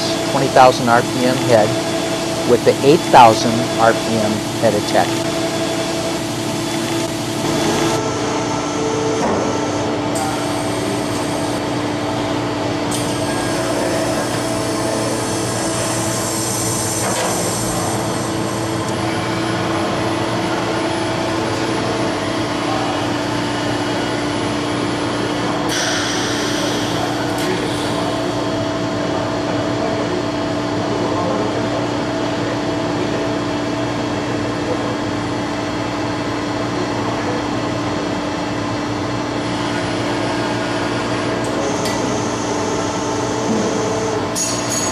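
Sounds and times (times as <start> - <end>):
machine humming: 0.0 - 44.9.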